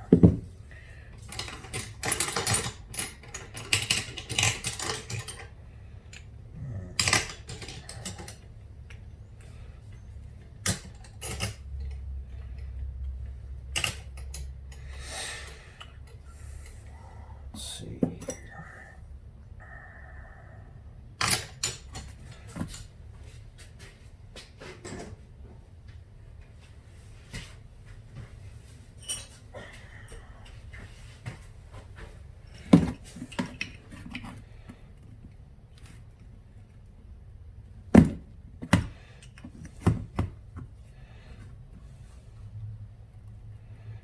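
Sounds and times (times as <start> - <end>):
low steady hum: 0.0 - 44.0
metal parts clinking on workbench: 1.2 - 5.5, 7.0 - 8.4, 10.6 - 12.0, 13.7 - 14.5, 21.2 - 22.9.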